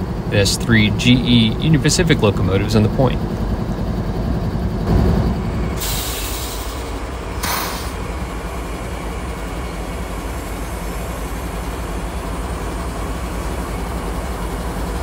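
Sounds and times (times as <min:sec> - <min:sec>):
diesel locomotive engines rumbling: 0:00.0 - 0:15.0
air hiss: 0:05.8 - 0:08.0.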